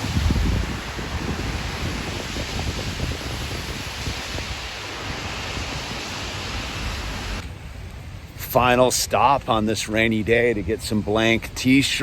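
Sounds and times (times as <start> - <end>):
wind buffeting microphone: 0.0 - 8.5.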